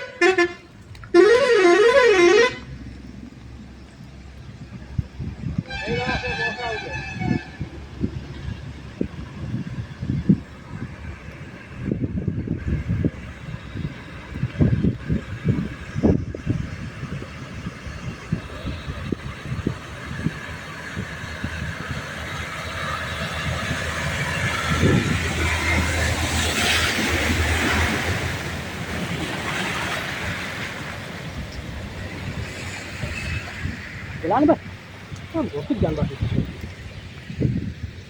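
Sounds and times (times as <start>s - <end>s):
vehicle passing by: 16.5s - 37.7s.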